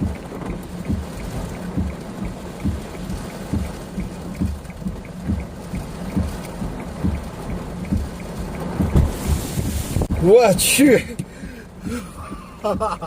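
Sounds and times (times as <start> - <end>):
faint fast ticking: 0.0 - 9.3
low thumps: 0.0 - 10.4
heavy rain: 0.0 - 13.0
storm wind: 6.1 - 12.7.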